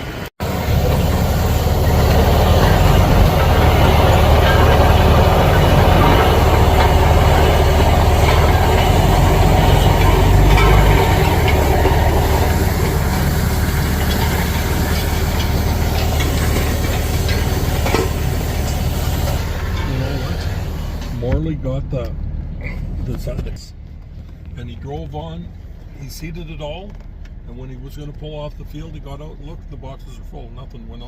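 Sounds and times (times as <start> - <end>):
heavy vehicle engine rumbling: 0.0 - 31.0
rattling: 0.4 - 22.2.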